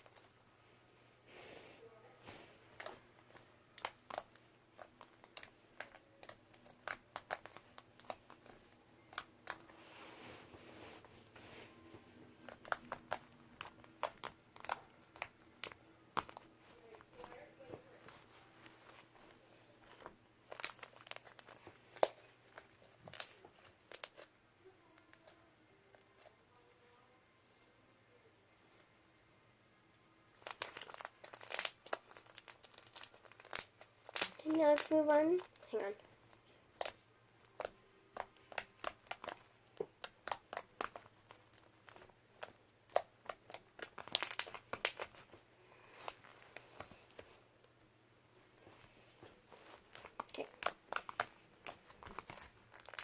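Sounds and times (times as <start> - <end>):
slime crackling and popping: 2.7 - 9.7, 12.4 - 17.4, 19.8 - 24.3, 30.3 - 47.3, 48.6 - 53.0.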